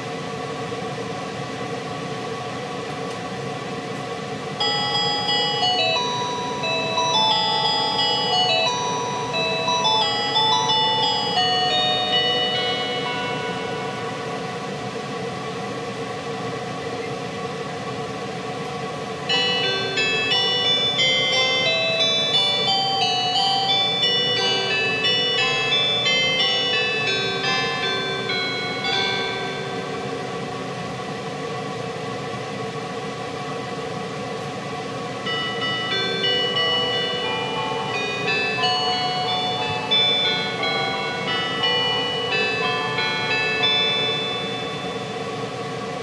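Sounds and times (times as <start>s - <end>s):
train car hum and hiss: 0.0s - 46.0s
onboard chime melody: 4.6s - 14.5s, 19.3s - 30.4s, 35.2s - 45.4s.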